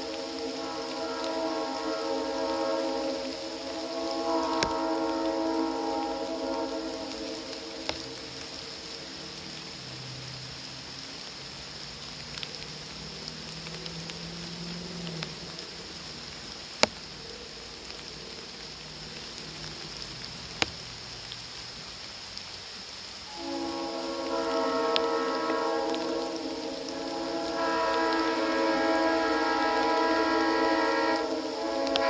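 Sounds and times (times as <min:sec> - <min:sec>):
three-chime train horn: 0:00.0 - 0:09.4, 0:23.3 - 0:32.0
steady rain falling: 0:00.0 - 0:32.0.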